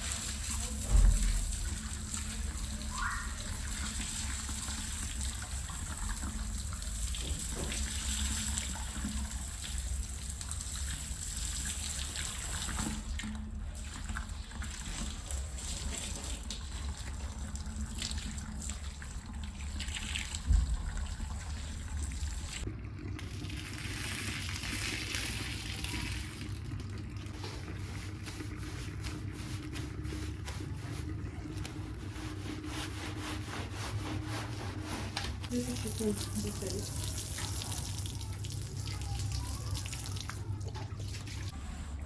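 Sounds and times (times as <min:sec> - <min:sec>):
water running and splashing: 0:23.1 - 0:41.5.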